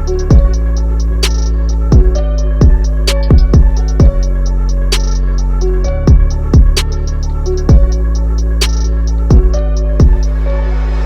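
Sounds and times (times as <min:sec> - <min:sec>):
deep kick drum: 0:00.0 - 0:05.0, 0:05.8 - 0:07.0, 0:07.6 - 0:10.4
hi-hat ticks: 0:00.0 - 0:10.4
held bass note: 0:00.0 - 0:11.0
sharp snare hit: 0:01.2 - 0:01.6, 0:03.1 - 0:03.8, 0:04.9 - 0:05.4, 0:08.6 - 0:09.0.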